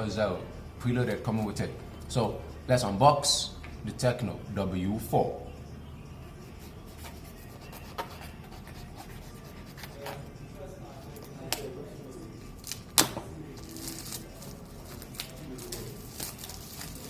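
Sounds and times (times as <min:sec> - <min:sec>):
cardboard packaging rustling: 0:12.6 - 0:17.0
sharp snap of packaging: 0:12.7 - 0:13.2.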